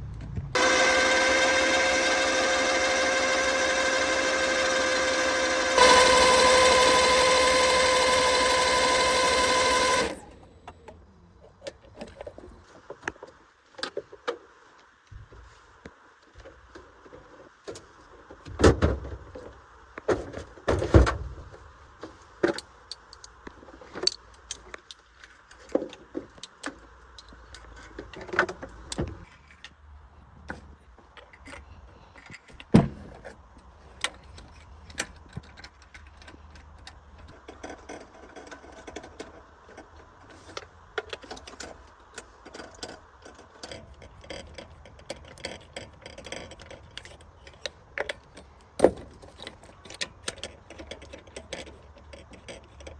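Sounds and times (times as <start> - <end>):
loud steady mechanical tone: 0.6 - 10.4.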